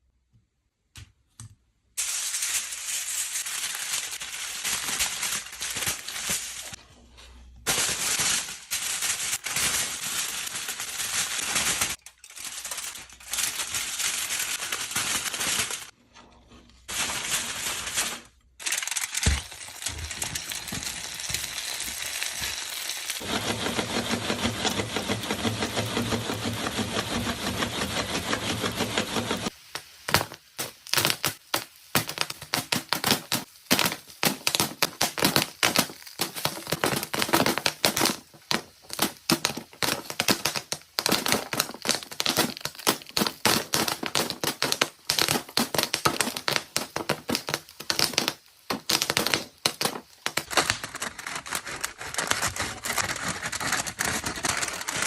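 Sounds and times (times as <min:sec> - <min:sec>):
popcorn popping: 0:18.1 - 0:55.0
pan sizzling hiss: 0:19.5 - 0:50.4.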